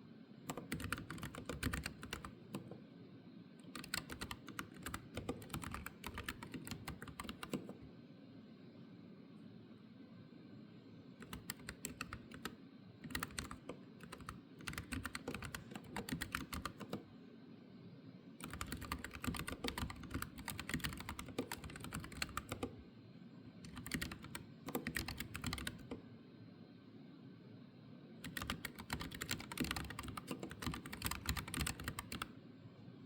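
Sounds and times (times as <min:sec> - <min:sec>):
mechanical keyboard typing: 0:00.5 - 0:02.7, 0:03.7 - 0:07.8, 0:11.2 - 0:17.0, 0:18.4 - 0:22.8, 0:23.7 - 0:26.0, 0:28.2 - 0:32.3.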